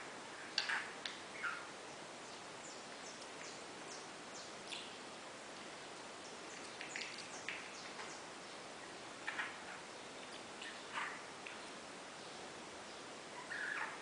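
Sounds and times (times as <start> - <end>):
faint hiss: 0.0 - 14.0
parakeet chirps and clicks: 0.6 - 1.6.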